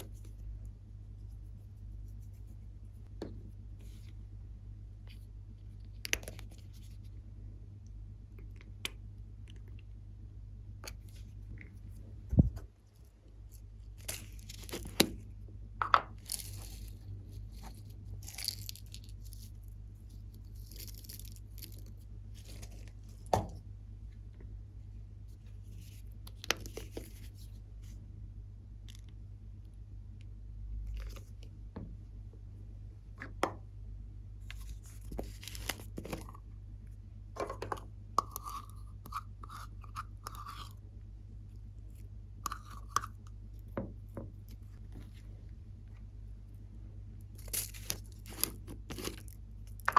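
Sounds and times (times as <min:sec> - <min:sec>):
steady low hum: 0:00.0 - 0:49.9
slime squishing and crackling: 0:17.6 - 0:19.6, 0:47.3 - 0:49.9.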